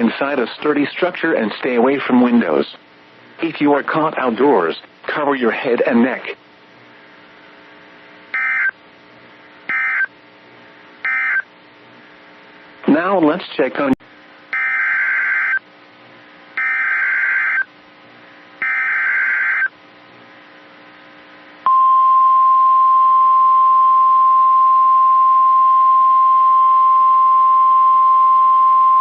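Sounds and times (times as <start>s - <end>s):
steady warning alarm tone: 8.3s - 8.8s, 9.7s - 10.1s, 11.0s - 11.5s, 14.5s - 15.6s, 16.6s - 17.7s, 18.6s - 19.7s.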